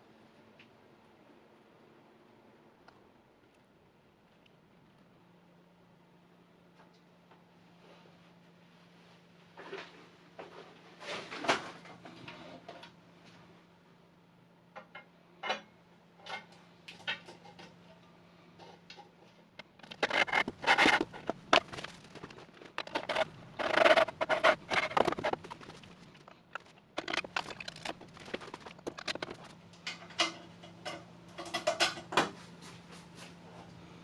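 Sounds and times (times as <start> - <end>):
steady low hum: 0.0 - 34.0
knocks clicks and scrapes of tools: 18.6 - 32.4.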